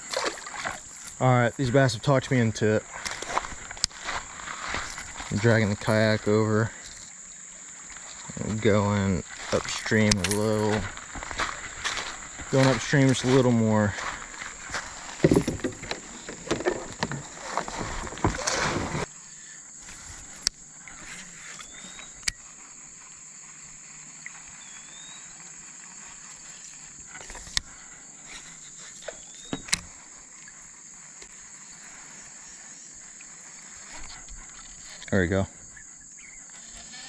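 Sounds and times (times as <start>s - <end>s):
kayak dragged through water: 0.0s - 7.1s, 7.8s - 19.1s, 19.8s - 22.0s
high insect drone: 0.0s - 37.0s.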